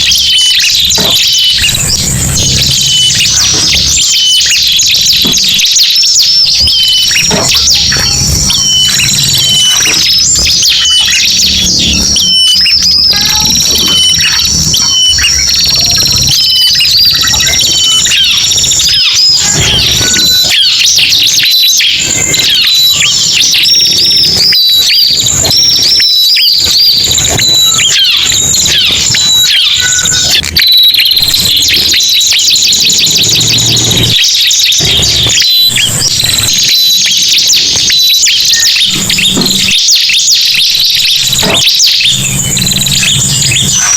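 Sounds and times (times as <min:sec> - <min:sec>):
birds chirping and whistling: 0:00.0 - 0:43.9
rattling bird trill: 0:00.0 - 0:43.9.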